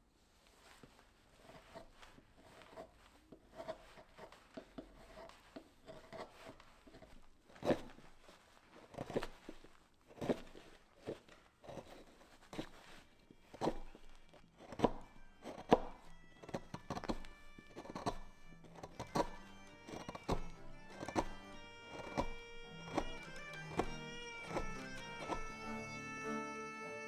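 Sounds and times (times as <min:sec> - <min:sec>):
background music: 0:14.7 - 0:27.0.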